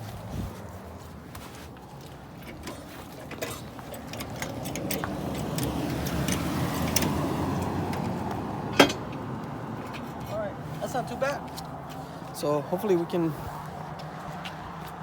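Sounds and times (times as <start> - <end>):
car jack mechanical noise: 2.3 - 10.3.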